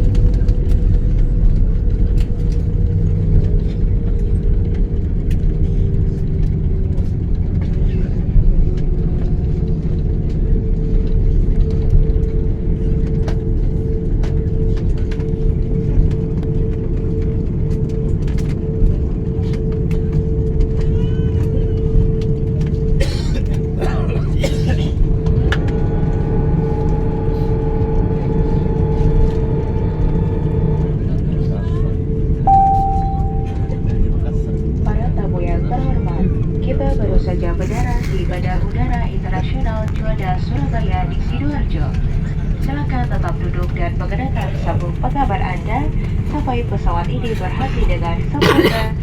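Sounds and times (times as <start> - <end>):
jet rumble in cabin: 0.0 - 49.0
steady hum: 32.2 - 35.5.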